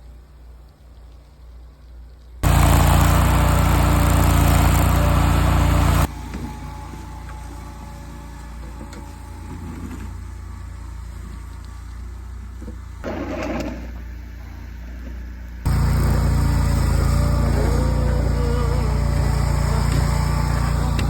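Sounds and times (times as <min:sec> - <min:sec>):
engine humming: 0:02.4 - 0:21.0.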